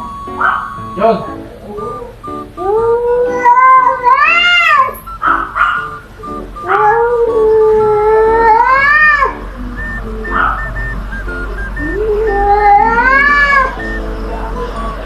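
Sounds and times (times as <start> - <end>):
background music: 0.0 - 15.0
cat yowling: 0.4 - 5.9, 6.6 - 9.4, 11.9 - 13.9.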